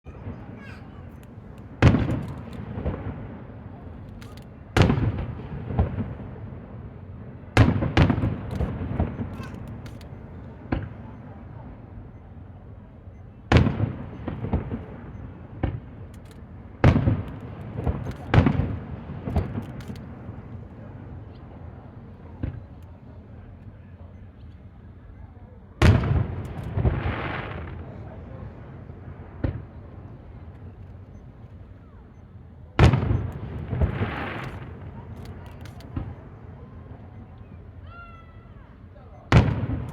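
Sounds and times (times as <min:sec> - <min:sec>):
firework shells booming: 0:00.1 - 0:11.3, 0:13.5 - 0:20.6, 0:25.8 - 0:32.2, 0:32.8 - 0:36.5, 0:39.3 - 0:39.9
small firework reports: 0:00.1 - 0:39.9.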